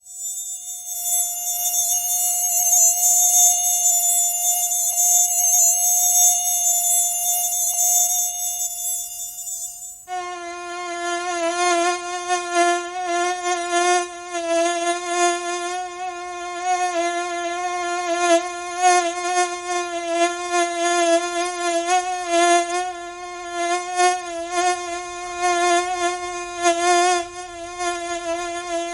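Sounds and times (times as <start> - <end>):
mosquito whine: 0.0 - 10.5.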